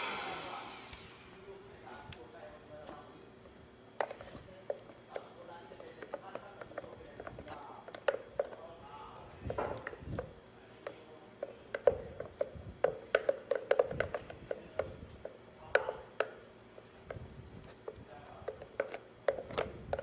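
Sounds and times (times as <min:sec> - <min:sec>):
utensil tapping blender jar: 0:09.7 - 0:16.4.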